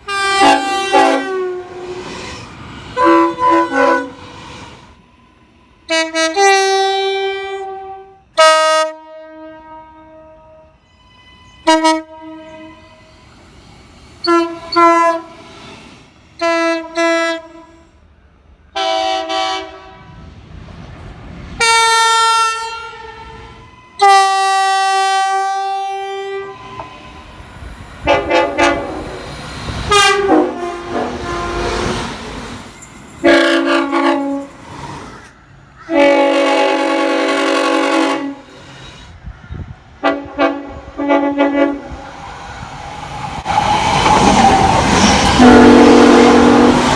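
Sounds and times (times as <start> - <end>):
locomotive air horn blasts: 0.0 - 2.0, 3.0 - 4.3, 5.9 - 13.1, 14.2 - 15.4, 16.4 - 17.9, 18.8 - 20.1, 21.6 - 27.1, 28.0 - 29.1, 29.9 - 32.0, 33.2 - 34.6, 35.9 - 38.6, 40.0 - 41.9, 45.2 - 46.9
passing train rumble: 0.0 - 46.9.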